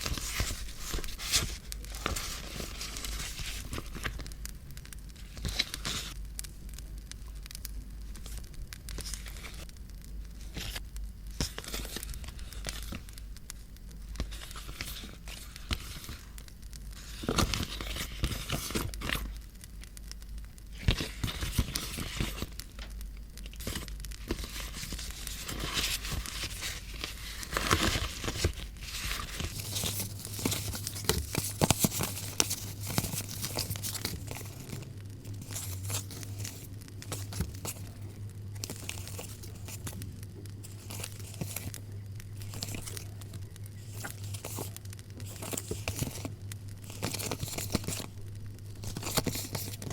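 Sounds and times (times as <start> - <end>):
paper crinkling and tearing: 0.0 - 6.2, 7.6 - 9.7, 10.3 - 19.4, 20.6 - 49.9
campfire crackle: 4.1 - 14.6, 22.5 - 27.4, 44.6 - 45.3, 46.3 - 46.8.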